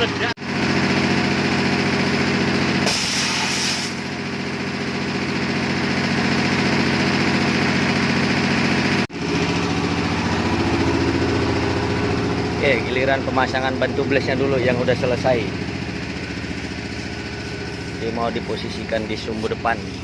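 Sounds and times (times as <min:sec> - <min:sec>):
engine running: 0:00.0 - 0:20.0
burst of hissing: 0:02.8 - 0:04.1.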